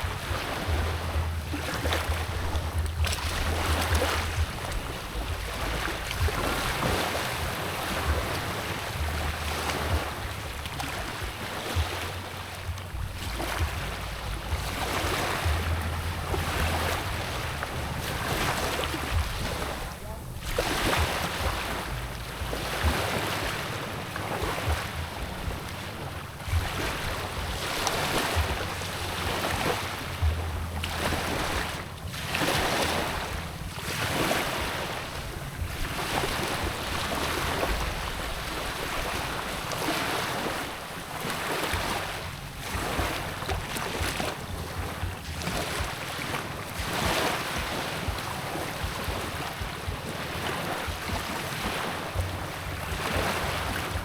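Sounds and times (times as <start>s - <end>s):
steady low hum: 0.0s - 33.8s
sea waves washing in: 0.0s - 54.0s
wind buffeting microphone: 0.0s - 54.0s.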